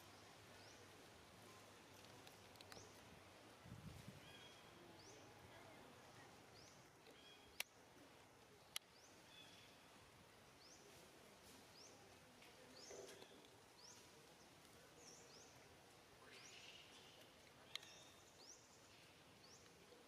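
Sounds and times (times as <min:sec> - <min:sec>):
faint outdoor ambience: 0:00.0 - 0:20.0
sharp clicks: 0:07.5 - 0:07.7
birds chirping: 0:11.7 - 0:20.0.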